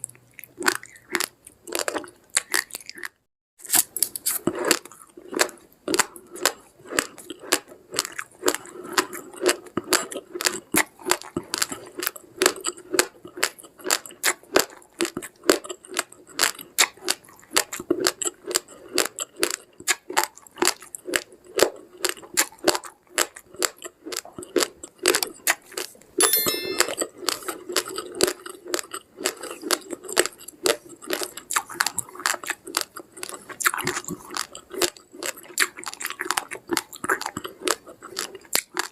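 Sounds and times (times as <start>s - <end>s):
rice grains being chewed: 0.0s - 26.0s, 27.7s - 38.9s
short ringing tone: 26.2s - 27.1s.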